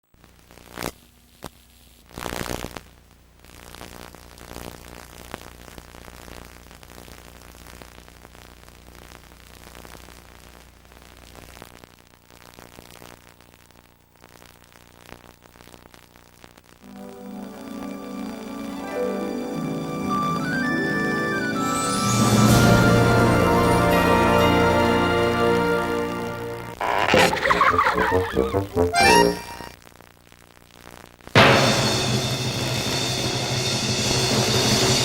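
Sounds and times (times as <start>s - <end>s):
tape static and hiss: 0.0s - 32.0s
burst of noise: 26.7s - 29.7s.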